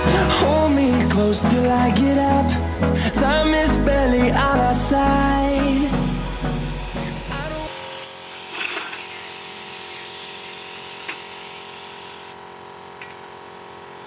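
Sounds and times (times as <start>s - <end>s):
background music: 0.0s - 7.7s.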